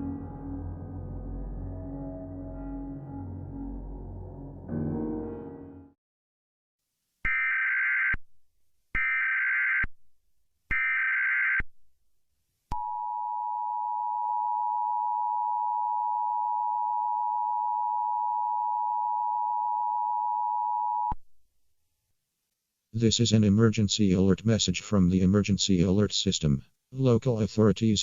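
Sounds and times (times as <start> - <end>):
two-note alert tone: 0.0 - 5.7.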